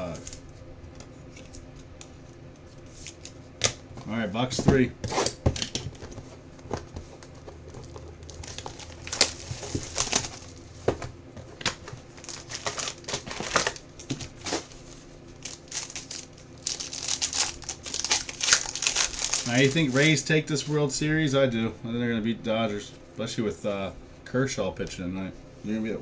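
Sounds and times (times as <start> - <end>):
packaging crinkling and tearing: 6.8 - 10.7, 11.6 - 20.3.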